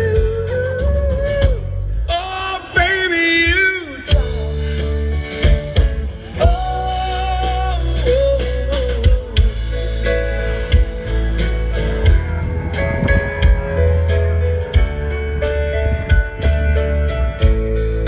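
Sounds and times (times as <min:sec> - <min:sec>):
live rock band playing: 0:00.0 - 0:18.0
person singing long oh: 0:06.3 - 0:10.0.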